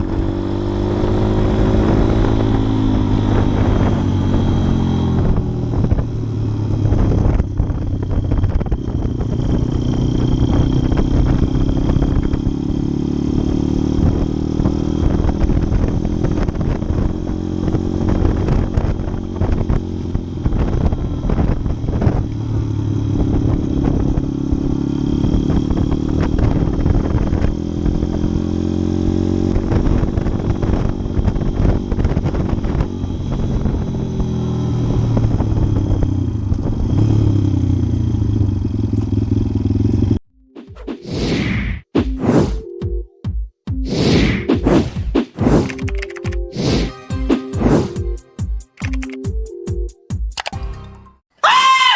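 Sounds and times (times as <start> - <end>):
motorcycle engine revving: 0.0 - 40.8.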